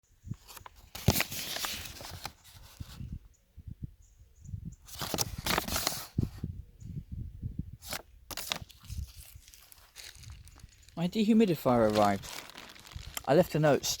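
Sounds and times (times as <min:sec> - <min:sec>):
rustling: 0:07.9 - 0:14.0.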